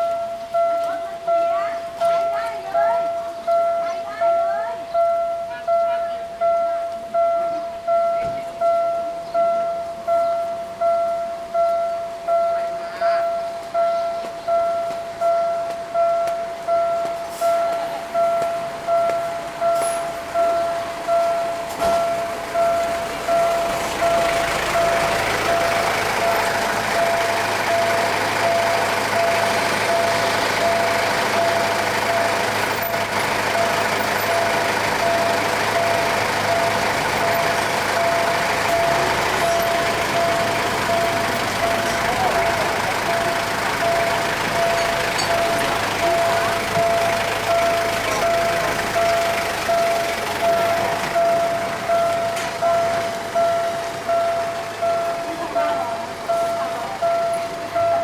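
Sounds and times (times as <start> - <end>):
level crossing bell dinging: 0.0 - 58.0
passing traffic rushing: 12.4 - 58.0.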